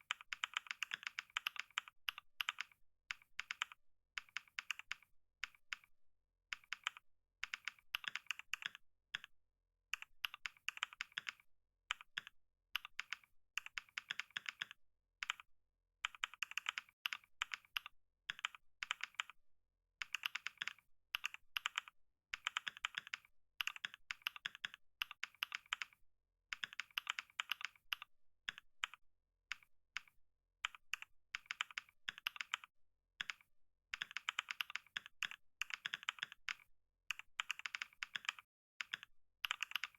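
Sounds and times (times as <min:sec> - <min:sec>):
keyboard typing: 0:00.0 - 0:05.0, 0:06.6 - 0:09.3, 0:10.0 - 0:15.4, 0:20.0 - 0:26.0, 0:30.0 - 0:39.9.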